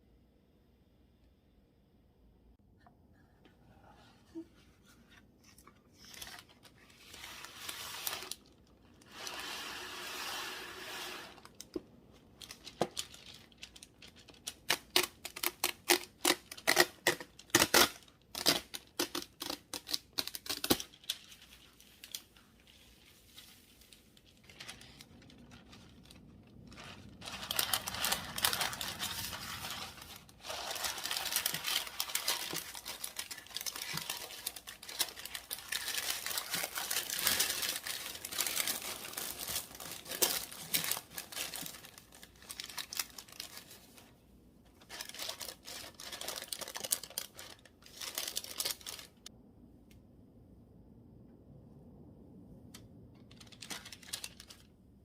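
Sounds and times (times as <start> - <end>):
plastic wrapping crinkling: 4.8 - 44.1, 44.7 - 49.3, 53.2 - 54.7.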